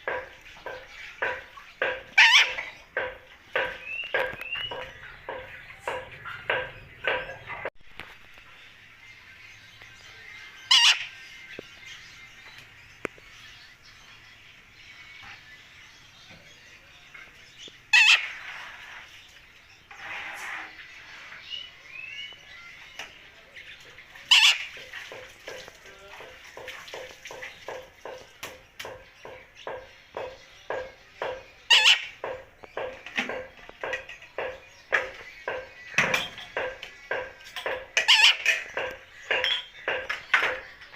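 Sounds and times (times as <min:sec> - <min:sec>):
parrot harsh squawk: 0:02.2 - 0:02.7, 0:10.7 - 0:11.1, 0:17.9 - 0:18.5, 0:24.3 - 0:24.7, 0:31.7 - 0:32.2, 0:38.0 - 0:38.5
parrot short clipped calls: 0:31.7 - 0:32.1.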